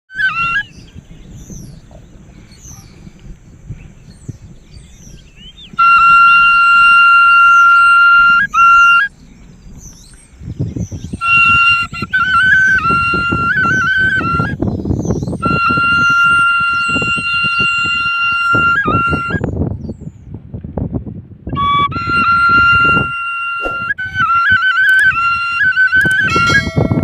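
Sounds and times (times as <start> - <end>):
flute playing folk tune: 0.1 - 1.0, 5.6 - 9.1, 11.1 - 14.7, 15.3 - 19.6, 21.5 - 27.0
small birds chirping: 0.5 - 5.8, 9.1 - 12.8, 14.6 - 15.5.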